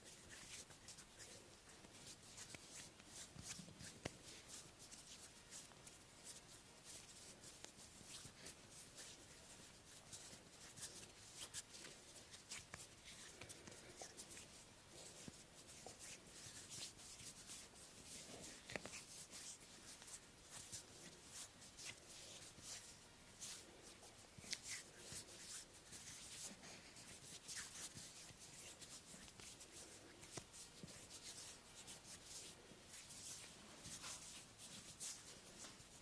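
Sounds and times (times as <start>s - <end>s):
hands rubbing on skin: 0.0s - 36.0s.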